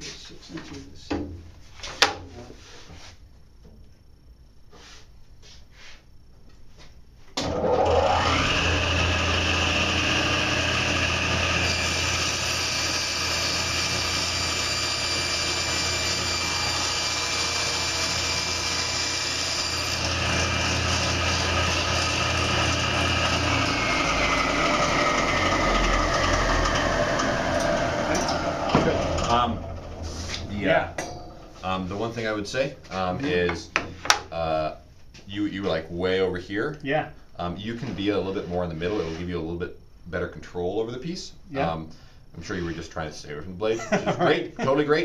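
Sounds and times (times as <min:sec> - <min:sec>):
table saw motor whine: 0:07.4 - 0:31.8
blade cutting wood: 0:08.1 - 0:30.5.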